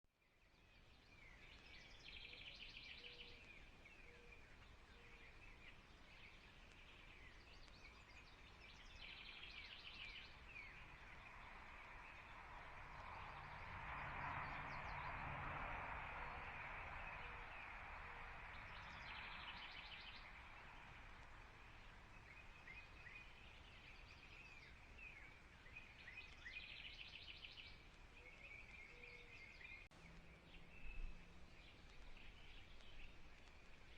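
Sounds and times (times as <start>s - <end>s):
songbirds singing: 0.1s - 33.9s.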